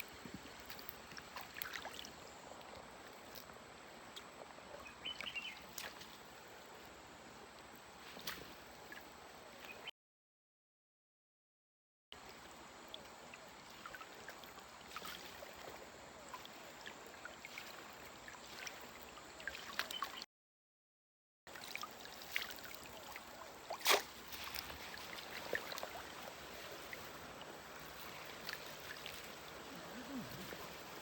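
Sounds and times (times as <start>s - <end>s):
water splashes: 0.0s - 6.6s, 12.2s - 20.2s, 21.5s - 31.0s
river water flowing: 0.0s - 9.9s, 12.2s - 20.2s, 21.5s - 31.0s.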